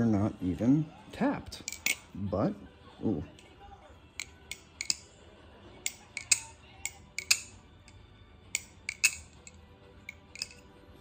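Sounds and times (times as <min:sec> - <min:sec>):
butterfly knife handles clicking: 0:01.6 - 0:02.1, 0:04.2 - 0:05.1, 0:05.8 - 0:08.0, 0:08.6 - 0:10.7.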